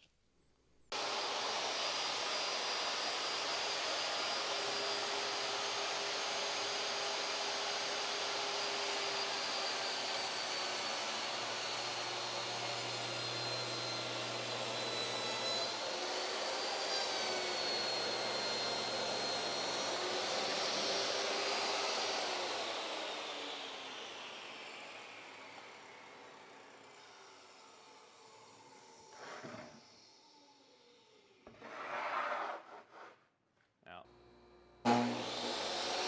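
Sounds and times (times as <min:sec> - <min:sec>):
power tool motor whining: 0:01.0 - 0:23.9, 0:34.9 - 0:36.0.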